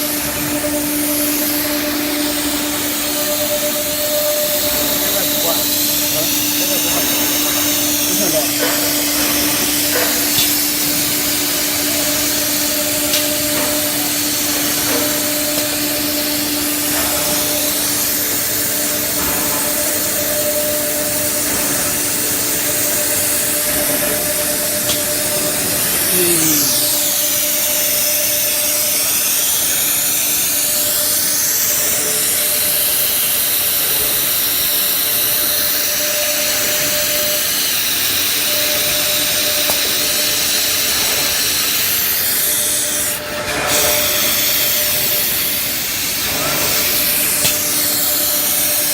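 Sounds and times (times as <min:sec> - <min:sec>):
router machine running: 0:24.2 - 0:35.9.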